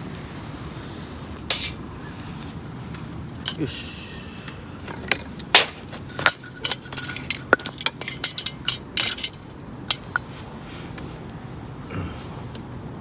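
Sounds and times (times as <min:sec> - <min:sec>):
metallic clinks and knocks: 0:01.5 - 0:01.8, 0:04.5 - 0:10.2.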